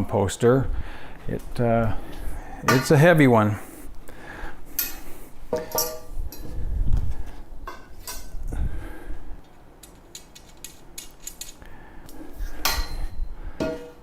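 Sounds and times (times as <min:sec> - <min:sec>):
metal parts clanking: 0:05.6 - 0:06.5, 0:09.8 - 0:11.6.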